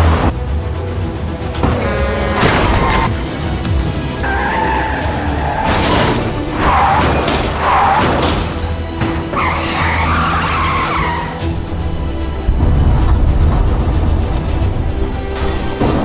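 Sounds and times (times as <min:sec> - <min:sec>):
dramatic background music: 0:00.0 - 0:16.0
tyres squealing and skidding: 0:01.0 - 0:12.4.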